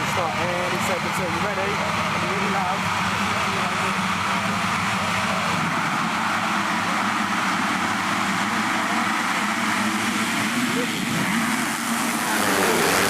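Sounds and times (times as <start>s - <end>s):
motocross bike engines droning: 0.0s - 13.0s.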